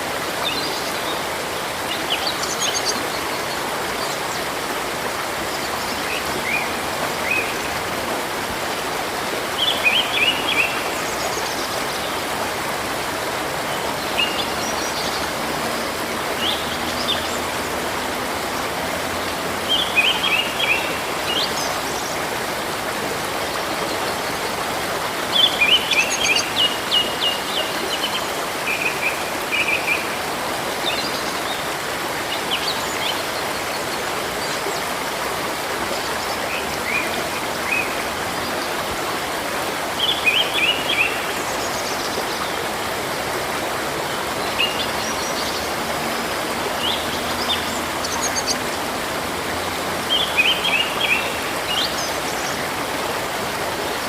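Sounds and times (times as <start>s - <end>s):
river flowing: 0.0s - 54.0s
songbird singing: 0.3s - 4.5s, 5.4s - 8.2s, 9.5s - 12.5s, 13.3s - 22.4s, 23.0s - 30.2s, 35.8s - 39.3s, 39.9s - 54.0s.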